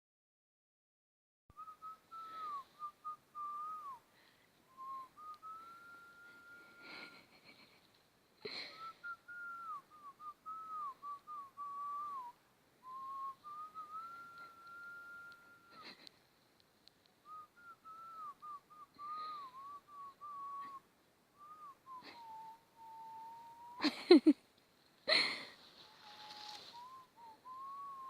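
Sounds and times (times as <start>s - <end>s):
person whistling a tune: 1.6s - 4.0s, 4.7s - 7.6s, 8.7s - 16.0s, 17.3s - 20.8s, 21.4s - 24.1s, 26.0s - 28.0s.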